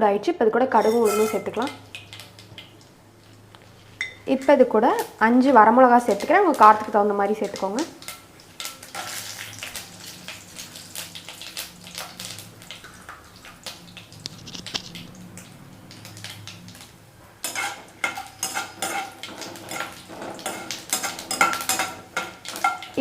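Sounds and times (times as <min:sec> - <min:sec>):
spices frying in oil: 0:00.7 - 0:23.0
metal spoon scraping a pan: 0:00.8 - 0:02.2, 0:08.0 - 0:10.4, 0:17.4 - 0:23.0.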